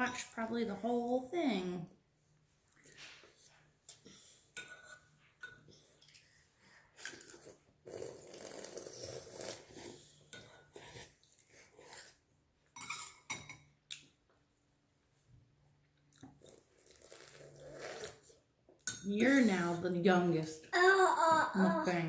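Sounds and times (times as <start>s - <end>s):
noisy eating: 2.7s - 12.3s, 16.0s - 18.5s
utensils clinking on dishes: 12.8s - 13.7s.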